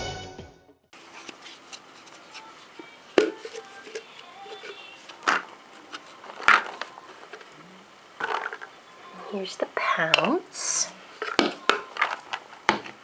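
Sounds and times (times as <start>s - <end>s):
packaging rustling: 1.0s - 8.8s, 11.0s - 13.0s.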